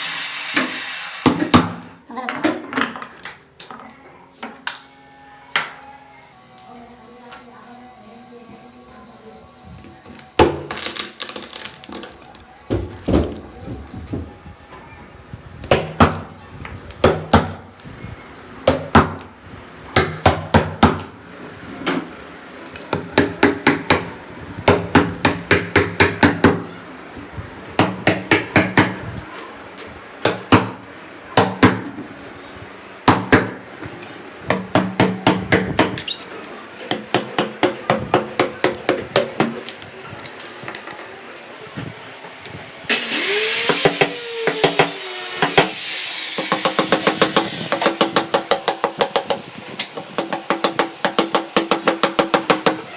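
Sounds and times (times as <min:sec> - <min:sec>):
hand hammer striking: 0:42.9 - 0:52.8.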